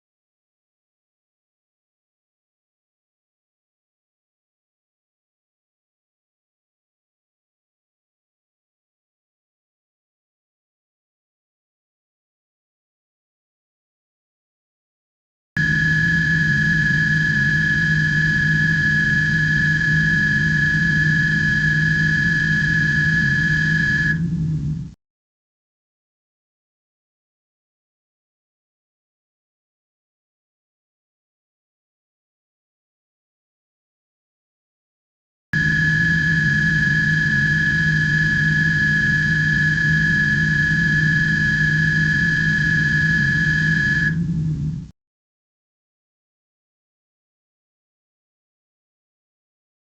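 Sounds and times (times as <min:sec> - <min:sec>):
high-pitched whine: 0:15.6 - 0:25.0, 0:35.6 - 0:44.9
steady high-pitched tone: 0:15.6 - 0:25.0, 0:35.6 - 0:44.9
steady low hum: 0:15.6 - 0:25.0, 0:35.6 - 0:44.9.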